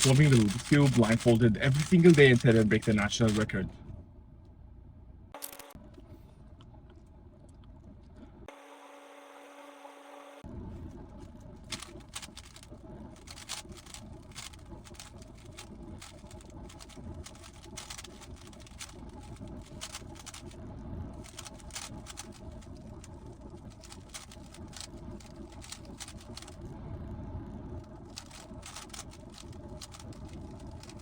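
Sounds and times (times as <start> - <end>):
puzzle cube plastic clicks: 0.0 - 3.6, 11.7 - 20.5, 21.2 - 26.6, 28.1 - 31.0
steady low hum: 0.0 - 8.5, 9.4 - 31.0.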